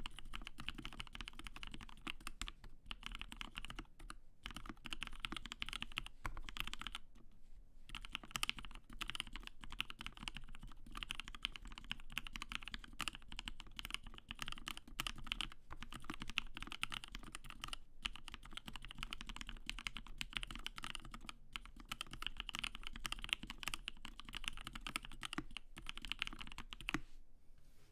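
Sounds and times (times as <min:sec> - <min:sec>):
fast mechanical keyboard typing: 0:00.0 - 0:07.0, 0:07.9 - 0:27.0.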